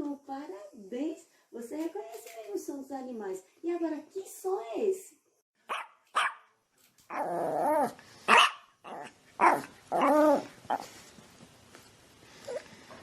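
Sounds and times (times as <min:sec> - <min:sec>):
dog barking: 0:05.7 - 0:06.5, 0:08.3 - 0:10.2.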